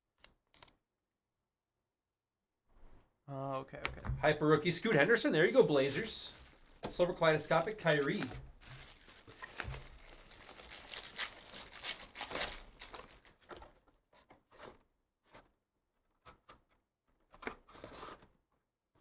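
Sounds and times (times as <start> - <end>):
foil wrappers crinkling: 4.6 - 13.5.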